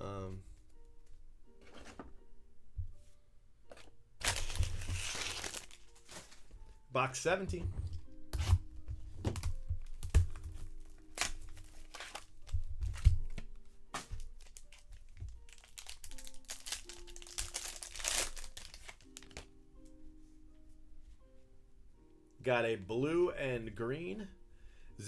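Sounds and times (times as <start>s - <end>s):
quiet background music: 0.0s - 25.0s
wrapper crinkling and tearing: 4.2s - 6.5s, 9.3s - 19.5s.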